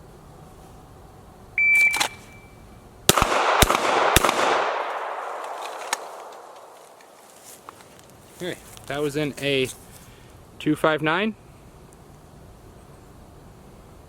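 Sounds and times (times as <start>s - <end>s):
shot timer beep: 1.6s - 2.6s
gunshot echo: 3.1s - 6.8s
handgun shots: 3.1s - 6.8s.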